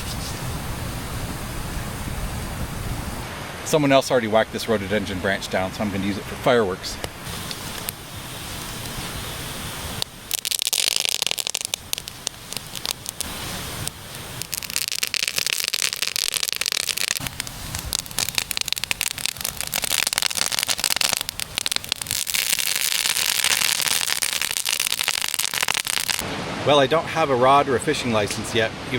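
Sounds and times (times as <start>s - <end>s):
campfire crackling and popping: 7.0s - 26.2s.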